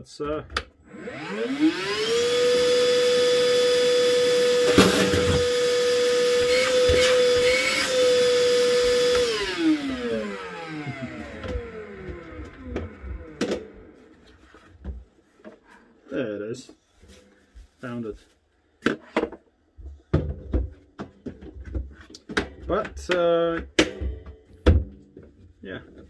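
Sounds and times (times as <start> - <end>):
vacuum cleaner motor whining: 0.8 - 14.2.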